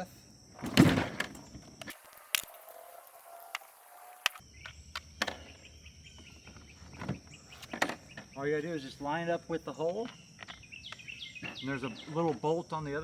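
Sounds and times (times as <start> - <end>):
hex wrench and plastic parts clicking: 1.8 - 4.4.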